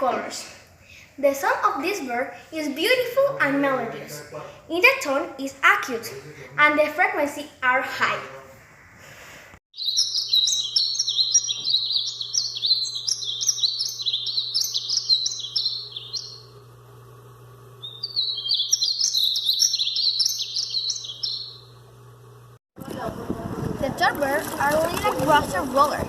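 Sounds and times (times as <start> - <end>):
bird singing high warble: 9.8 - 21.8.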